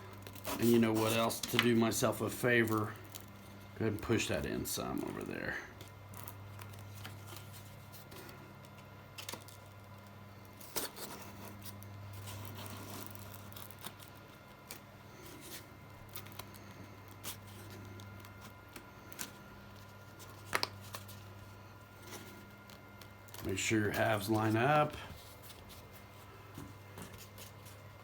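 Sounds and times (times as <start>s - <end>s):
steady low hum: 0.0s - 28.0s.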